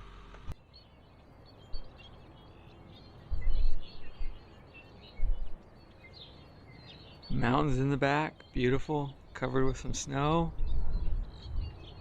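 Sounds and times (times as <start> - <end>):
small birds chirping: 0.4 - 12.0
wind gusts hitting microphone: 3.2 - 5.8, 7.2 - 12.0.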